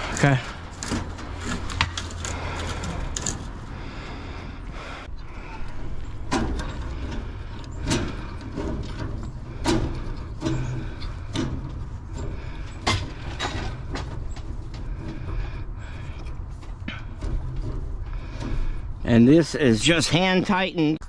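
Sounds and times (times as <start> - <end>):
steady low rumble: 0.0 - 21.0
sharp knocks and clicks: 6.0 - 19.0.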